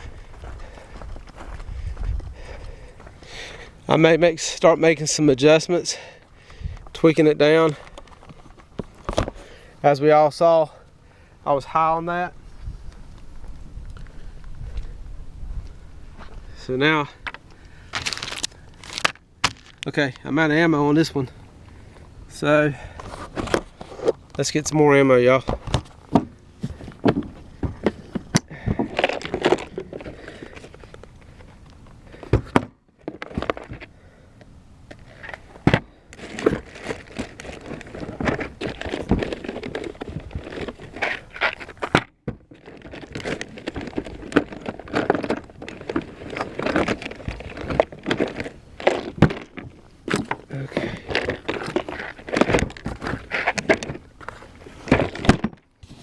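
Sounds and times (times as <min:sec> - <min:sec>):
packaging rustling and crinkling: 0:17.6 - 0:20.0, 0:35.0 - 0:56.0.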